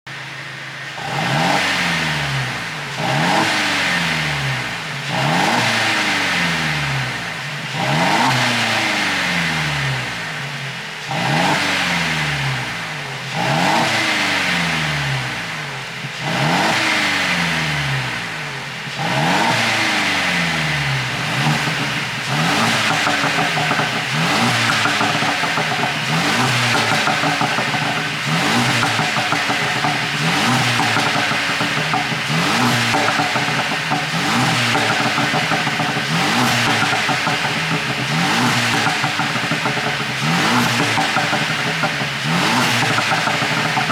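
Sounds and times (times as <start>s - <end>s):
car engine revving: 0.1s - 43.9s
exhaust popping and crackling: 20.7s - 43.9s.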